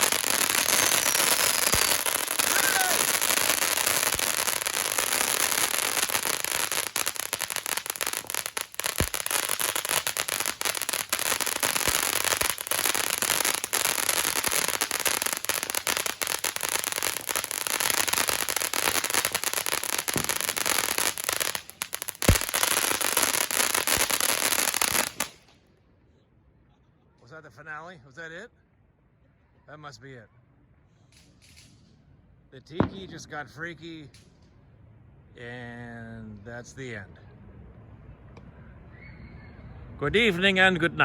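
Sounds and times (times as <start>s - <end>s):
firework crackling and banging: 0.0s - 25.6s, 32.8s - 33.3s.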